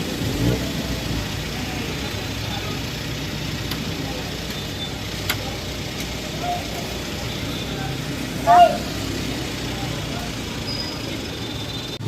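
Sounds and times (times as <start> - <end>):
vehicle engines running: 0.0 - 12.0
faint voices: 0.6 - 12.0.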